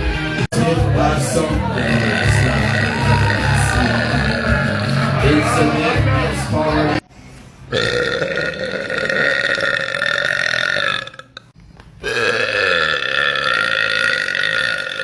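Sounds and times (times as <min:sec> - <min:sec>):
woman burping: 0:01.8 - 0:05.2, 0:07.7 - 0:15.0.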